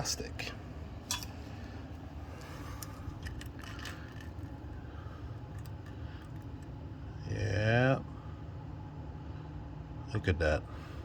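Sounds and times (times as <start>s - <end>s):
low hum: 0.0s - 11.0s
small hard pieces handled: 2.4s - 4.8s.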